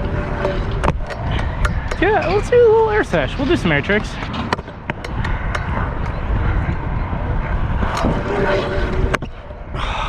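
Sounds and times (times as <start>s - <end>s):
scooter clicks: 0.0s - 2.4s
scooter wheels rolling on concrete: 0.0s - 9.7s.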